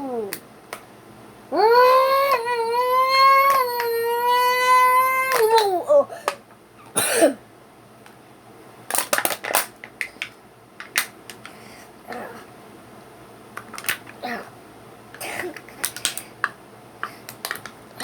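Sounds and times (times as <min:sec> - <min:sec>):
metal can clicks and crinkles: 0:08.9 - 0:11.5, 0:13.6 - 0:14.2, 0:15.5 - 0:17.8.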